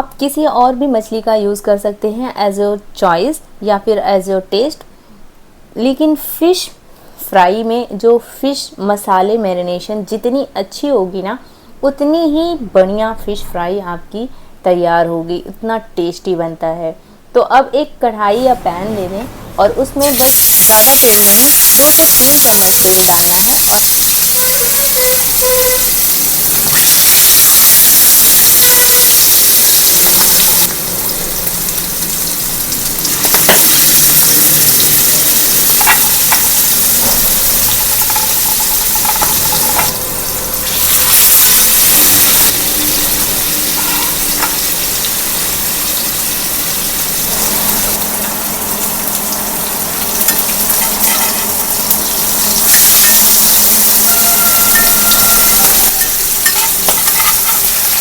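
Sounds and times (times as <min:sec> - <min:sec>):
fish sizzling in hot oil: 0:20.0 - 0:58.0.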